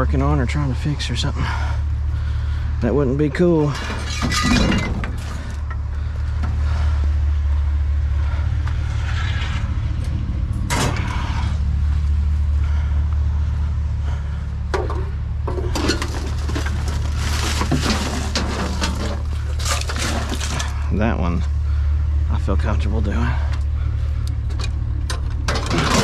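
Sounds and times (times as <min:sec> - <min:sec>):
vehicle engine idling: 0:00.0 - 0:04.2, 0:05.0 - 0:26.0
knocks and scrapes of items: 0:14.7 - 0:20.8.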